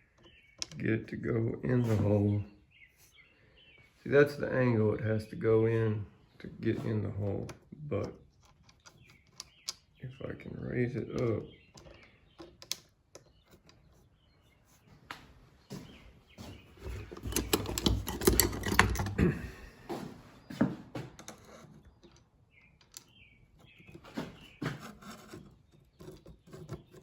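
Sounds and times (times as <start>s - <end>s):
metallic clicks and knocks: 16.8s - 19.3s.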